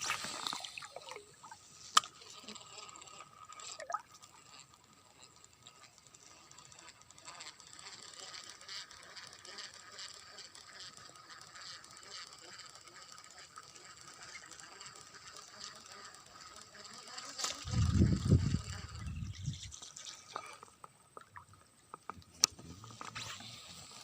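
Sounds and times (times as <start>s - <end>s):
fishing reel clicking: 1.9s - 20.7s.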